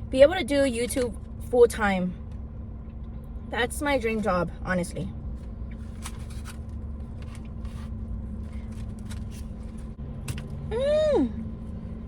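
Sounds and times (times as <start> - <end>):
steady low hum: 0.0 - 12.0
person humming mmm: 10.7 - 11.4.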